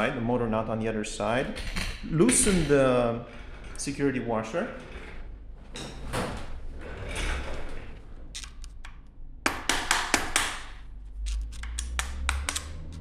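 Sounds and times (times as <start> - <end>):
metal scraping: 6.7 - 9.1, 10.5 - 13.0
metal clicks and clinks: 10.6 - 13.0.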